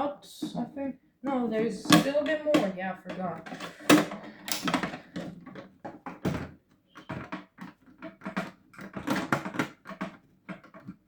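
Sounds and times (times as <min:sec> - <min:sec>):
plastic casing clicking and clacking: 0:01.8 - 0:11.0.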